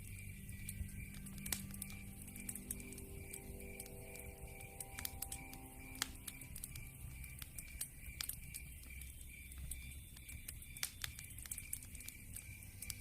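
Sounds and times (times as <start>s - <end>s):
low rumble of flame: 0.0s - 13.0s
wood fire crackling: 0.0s - 13.0s.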